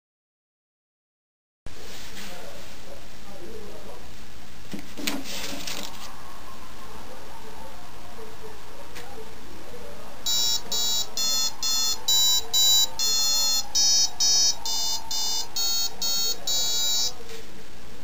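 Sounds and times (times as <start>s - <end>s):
short electronic beeps: 10.3s - 17.1s.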